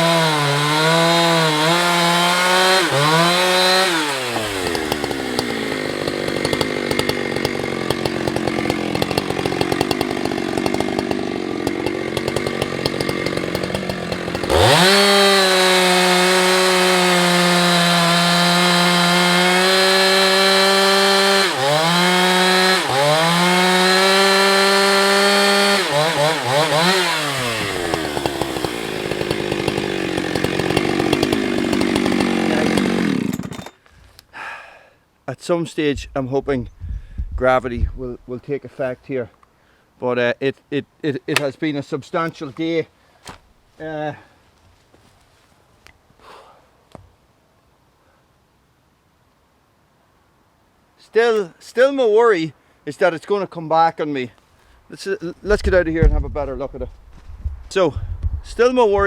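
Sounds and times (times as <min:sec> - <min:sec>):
chainsaw idling and revving: 0:00.0 - 0:33.8
chainsaw cutting into log: 0:00.0 - 0:34.6.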